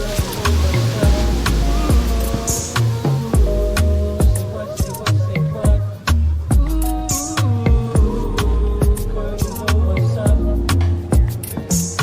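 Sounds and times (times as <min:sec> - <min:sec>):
background music with drums: 0:00.0 - 0:12.0.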